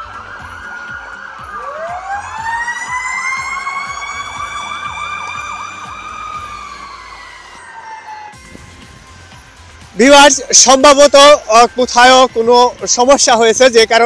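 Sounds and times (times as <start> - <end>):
siren yelping: 0.0 - 8.4
siren wailing: 0.0 - 8.7.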